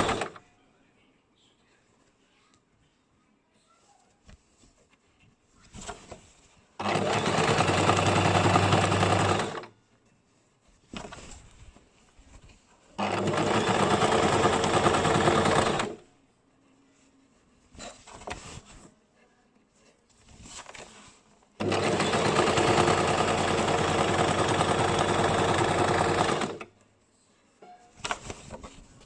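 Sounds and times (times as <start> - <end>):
electric sewing machine stitching: 0.0 - 0.4, 6.8 - 9.7, 13.0 - 16.0, 21.6 - 26.7
light handling sounds: 3.5 - 6.7, 26.8 - 29.0.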